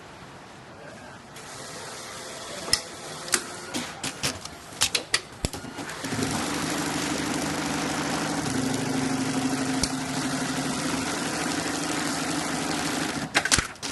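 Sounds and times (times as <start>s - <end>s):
sewing machine running: 5.6s - 13.4s.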